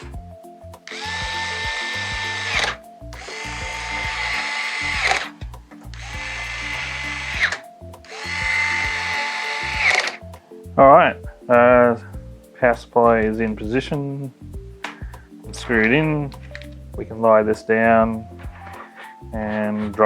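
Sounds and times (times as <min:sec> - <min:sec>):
electric screwdriver motor whine: 0:00.9 - 0:05.3, 0:06.0 - 0:10.2
screwdriver chirp stopping: 0:00.9 - 0:05.4, 0:06.0 - 0:10.2.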